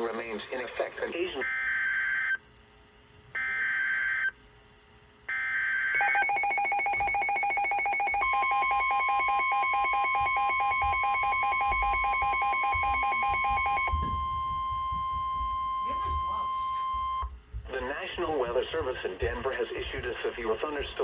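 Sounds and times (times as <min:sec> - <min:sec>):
rapid pulsing alarm beep: 0:05.4 - 0:17.3
steady warning tone: 0:05.9 - 0:17.3
screechy data tones: 0:06.0 - 0:17.3.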